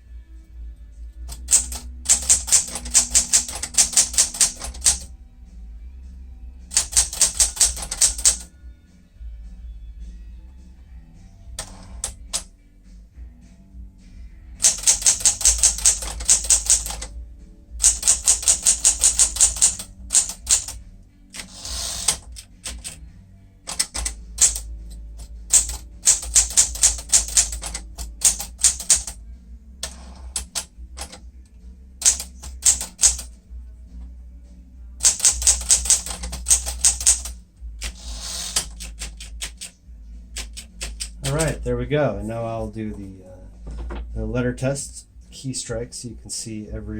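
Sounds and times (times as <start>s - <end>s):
manual typewriter keystrikes: 1.3s - 5.1s, 6.7s - 8.5s, 11.6s - 12.5s, 14.6s - 17.1s, 17.8s - 20.8s, 21.4s - 23.1s, 23.7s - 29.2s, 29.8s - 31.2s, 32.0s - 33.3s, 35.0s - 39.7s, 40.4s - 41.6s.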